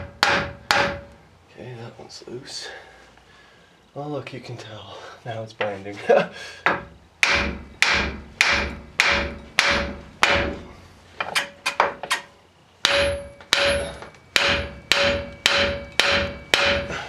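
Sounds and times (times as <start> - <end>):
hammer pounding on steel: 0.0 - 1.2, 6.6 - 12.1, 12.8 - 17.0.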